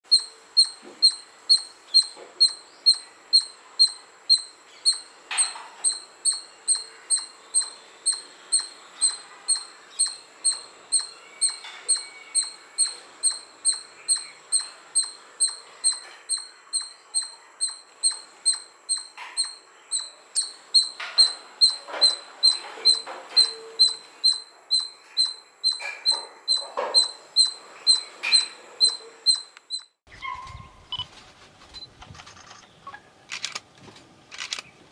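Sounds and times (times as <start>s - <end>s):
squirrel chirping: 0.0s - 30.7s
faint rustles and knocks: 30.4s - 32.7s.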